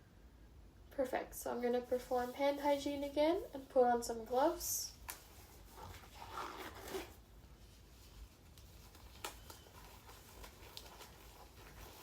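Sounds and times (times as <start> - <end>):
faint rustling of hands: 5.0 - 12.0.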